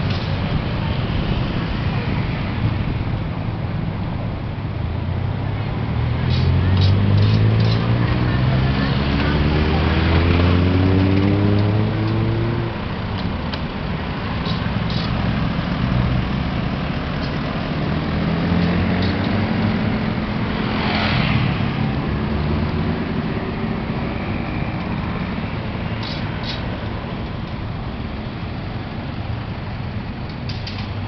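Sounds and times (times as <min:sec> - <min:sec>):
vehicle engines running: 0:00.0 - 0:31.0
vehicle passing close: 0:14.4 - 0:26.6.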